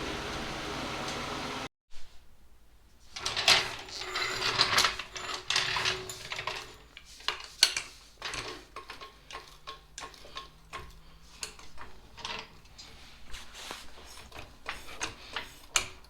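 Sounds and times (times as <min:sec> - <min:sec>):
car jack metal clicks and clanks: 0:03.2 - 0:13.0.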